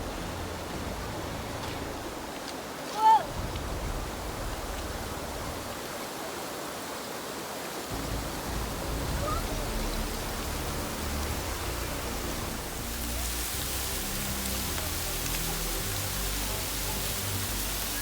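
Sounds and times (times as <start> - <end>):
waterfall rushing: 0.0 - 18.0
low uneven rumble: 3.3 - 5.9.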